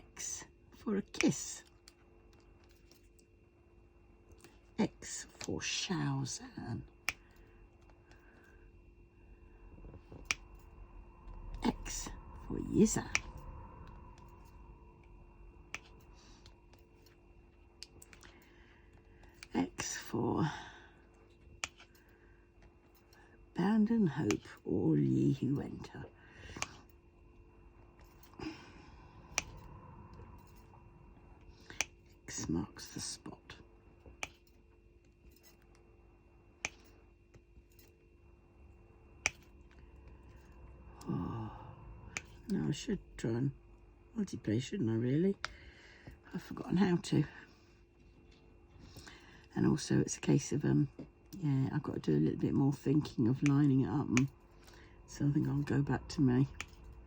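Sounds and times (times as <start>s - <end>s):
faint room hum: 0.0s - 57.0s
light clicks of drill pen tapping: 21.6s - 22.0s, 34.1s - 34.5s, 36.6s - 37.9s, 39.2s - 39.7s, 53.4s - 54.3s.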